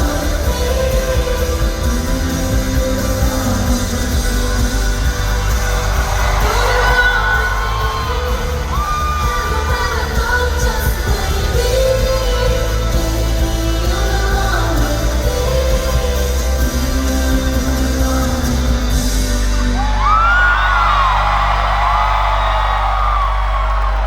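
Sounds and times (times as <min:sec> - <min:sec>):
woman singing: 0:00.0 - 0:19.9
heavy bass: 0:00.0 - 0:24.0
live pop-rock band: 0:00.0 - 0:24.0
audience yelling: 0:02.0 - 0:11.5, 0:19.6 - 0:24.0.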